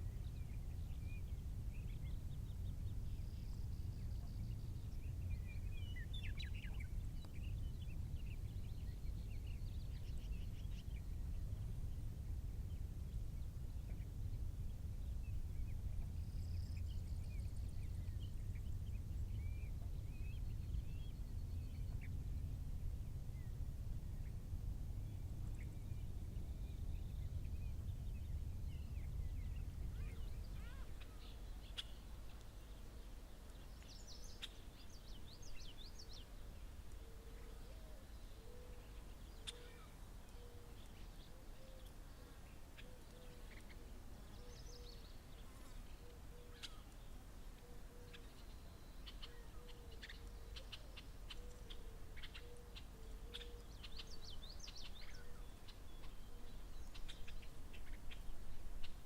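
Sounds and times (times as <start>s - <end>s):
low wind rumble: 0.0s - 59.0s
birds chirping: 25.6s - 59.0s.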